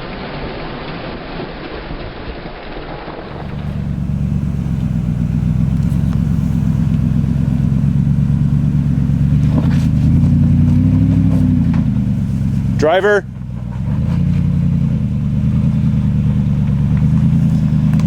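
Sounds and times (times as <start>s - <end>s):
engine running and revving: 3.3s - 18.0s.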